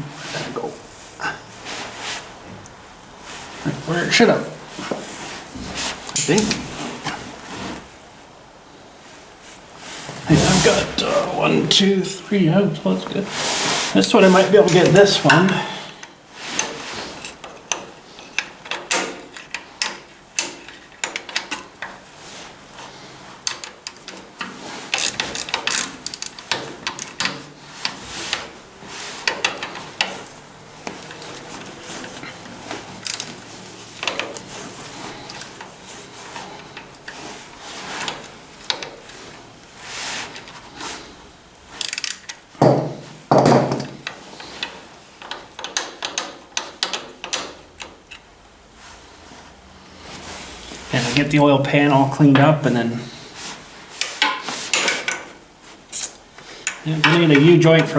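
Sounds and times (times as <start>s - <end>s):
metal tools clinking: 6.1s - 6.8s
ratchet wrench clicking: 41.8s - 42.4s.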